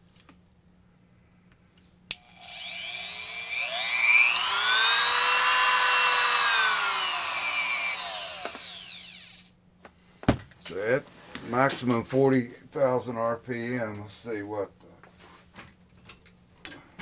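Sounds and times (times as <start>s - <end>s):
rotary tool motor whining: 2.2s - 9.5s.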